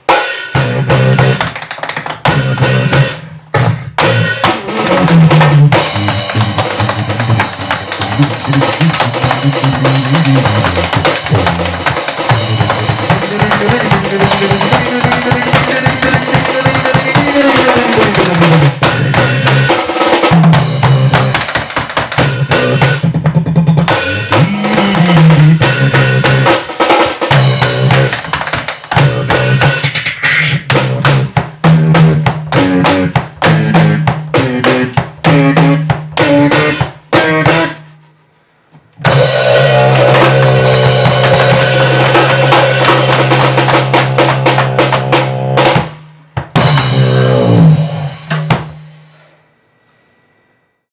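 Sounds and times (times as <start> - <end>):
beatboxing: 0.0 - 37.9, 39.0 - 49.3
drum kit groove: 0.0 - 38.1, 38.8 - 49.1
sliding bass line: 0.6 - 1.4, 2.2 - 21.4, 23.8 - 26.6, 27.3 - 28.3, 30.6 - 37.8, 39.0 - 46.0, 46.6 - 48.6
tap dancing: 1.0 - 29.8, 39.1 - 46.9.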